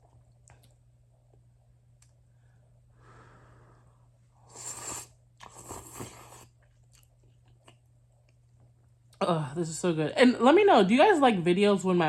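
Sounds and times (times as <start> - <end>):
person slurping noodles: 4.4 - 6.5.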